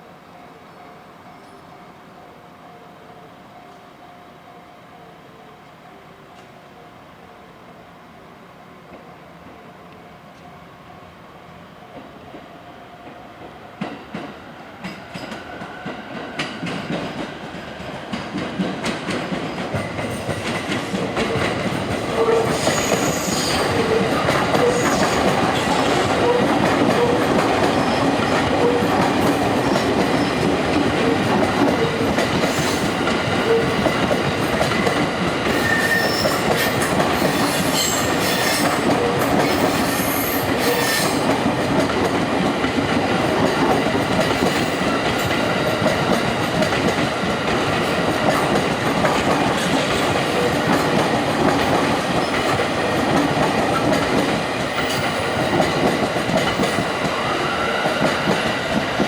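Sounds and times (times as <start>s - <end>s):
train wheels clattering over rails: 12.0s - 59.0s.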